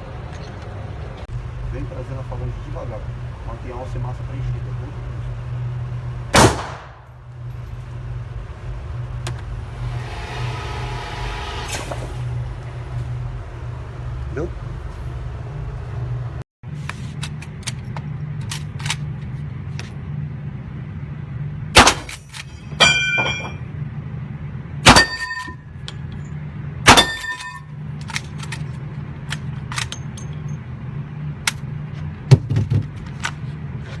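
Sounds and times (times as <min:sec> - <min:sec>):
steady low hum: 0:00.0 - 0:34.0
loud gunshots: 0:06.3 - 0:07.0, 0:21.8 - 0:22.1
metallic ringing clink: 0:22.4 - 0:23.7, 0:24.9 - 0:26.3, 0:26.9 - 0:27.7.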